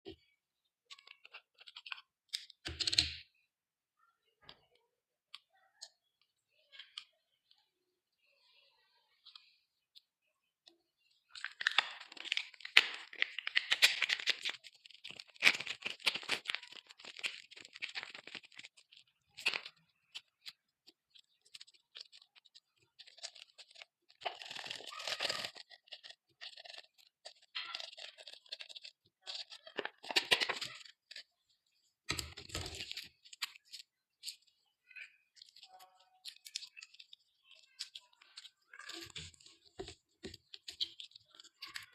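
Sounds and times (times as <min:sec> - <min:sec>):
slime crackling and popping: 0:11.3 - 0:31.3, 0:32.0 - 0:41.9.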